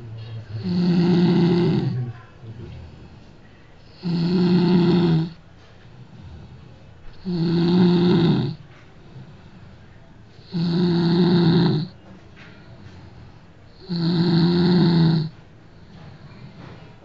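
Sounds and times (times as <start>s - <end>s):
quiet breathing: 0.0s - 17.0s
person snoring loudly: 0.4s - 2.1s, 3.8s - 5.4s, 7.2s - 8.6s, 10.4s - 11.9s, 13.8s - 15.3s.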